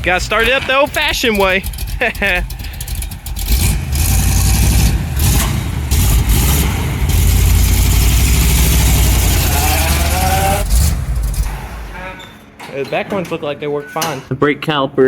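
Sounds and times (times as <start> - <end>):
truck engine low rumble: 0.0 - 12.0.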